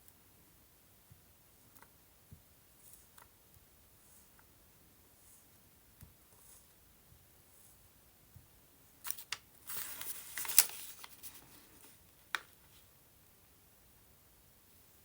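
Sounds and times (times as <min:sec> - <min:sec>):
paper rustling: 0:09.0 - 0:12.9.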